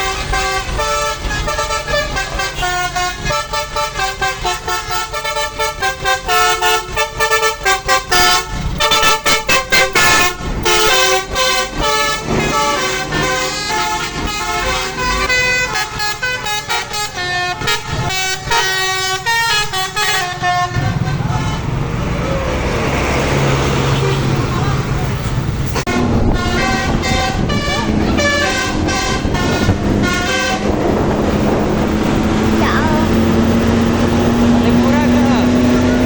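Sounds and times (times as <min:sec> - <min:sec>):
bus horn playing a quick melody: 0:00.0 - 0:21.7, 0:25.9 - 0:33.6
bus engine: 0:00.0 - 0:36.0
road noise: 0:00.0 - 0:36.0.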